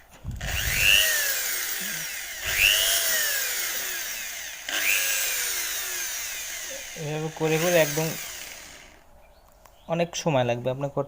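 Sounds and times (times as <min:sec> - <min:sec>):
electric drill boring metal: 0:00.4 - 0:09.0.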